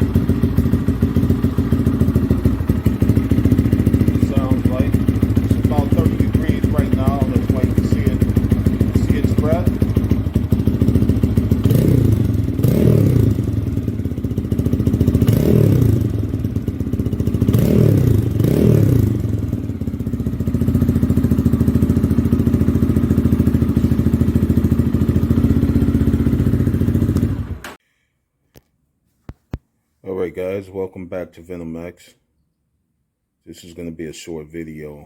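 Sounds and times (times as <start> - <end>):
motorcycle engine revving and idling: 0.0 - 27.8.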